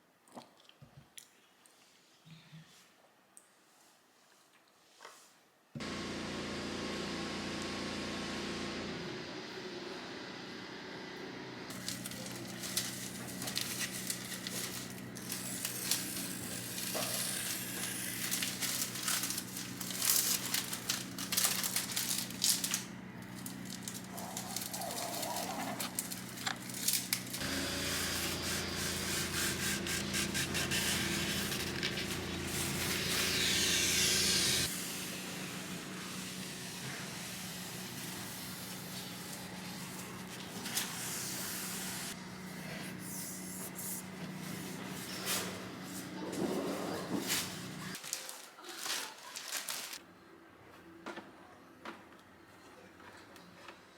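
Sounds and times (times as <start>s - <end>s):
louder hum and hiss: 5.8s - 24.0s, 25.8s - 48.0s
rustling and crinkling: 11.7s - 27.4s, 43.6s - 50.0s.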